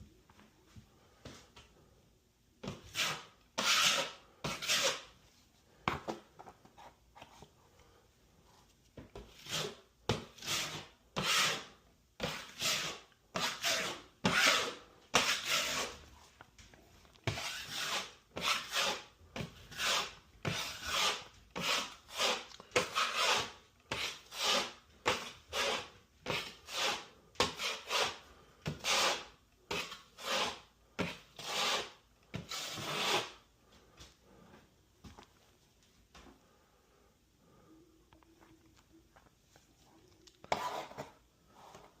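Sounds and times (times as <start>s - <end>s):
knife cutting drywall: 2.6s - 5.1s, 9.2s - 16.0s, 17.2s - 33.4s.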